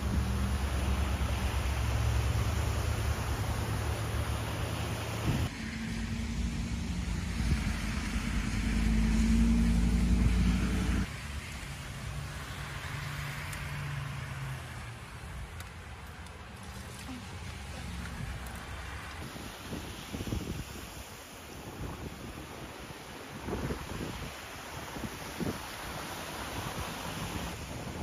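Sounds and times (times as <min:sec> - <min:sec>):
vehicle engine humming: 0:00.0 - 0:19.2
quieter engine hum: 0:00.0 - 0:20.1.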